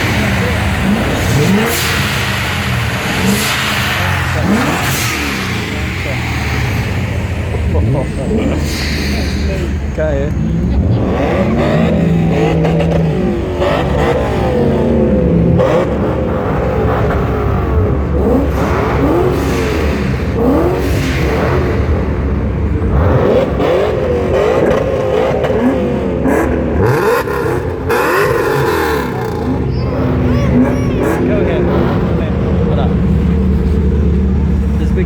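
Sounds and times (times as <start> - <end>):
car engine revving: 0.0 - 35.0.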